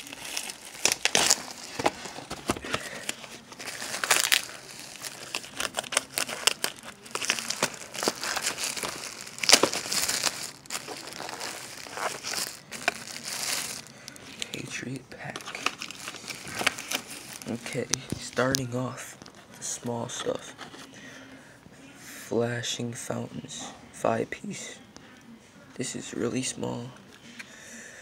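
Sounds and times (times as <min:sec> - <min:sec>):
packaging crinkling and tearing: 0:00.0 - 0:20.8.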